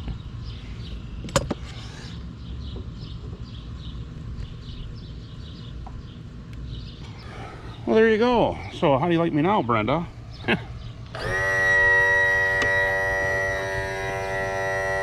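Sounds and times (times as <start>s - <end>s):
electric trim motor and pump running: 11.0s - 15.0s.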